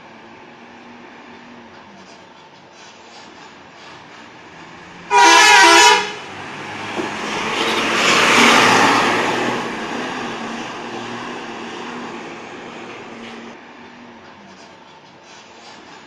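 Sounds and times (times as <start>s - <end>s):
bus passing by: 0.0s - 16.0s
bus multi-tone horn: 5.1s - 6.3s, 7.4s - 8.1s.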